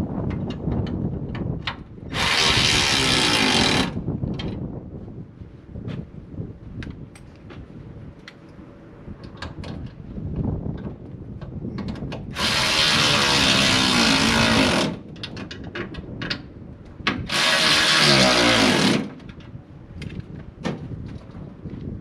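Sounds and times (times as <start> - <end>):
power drill running: 2.1 - 4.0, 12.4 - 15.0, 17.3 - 19.1.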